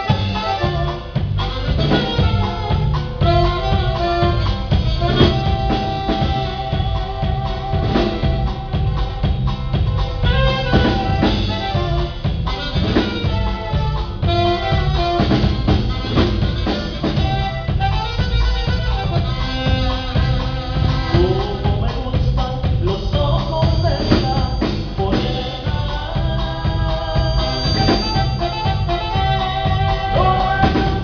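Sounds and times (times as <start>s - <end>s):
band playing instrumental: 0.0s - 31.0s
bass: 0.0s - 31.0s
drum kit beat: 0.0s - 31.0s
horn-like melody: 0.0s - 31.0s.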